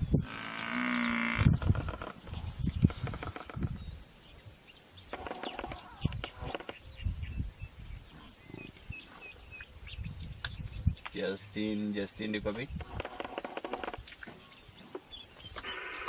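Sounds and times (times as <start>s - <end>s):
hyena calls: 5.1s - 6.8s.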